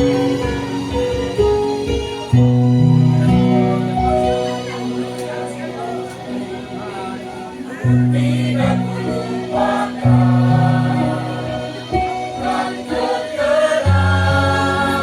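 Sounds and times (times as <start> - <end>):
held low accompaniment notes: 0.0 - 13.2
choir singing in parts: 5.3 - 15.0.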